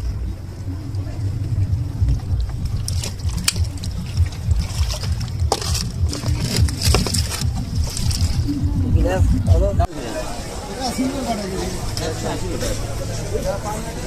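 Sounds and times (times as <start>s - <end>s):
wind buffeting microphone: 0.0s - 9.9s.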